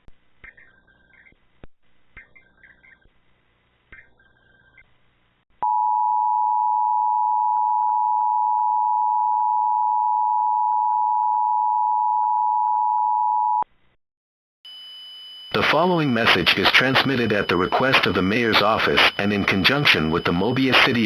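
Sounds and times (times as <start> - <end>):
two-tone alarm: 14.7 - 21.0.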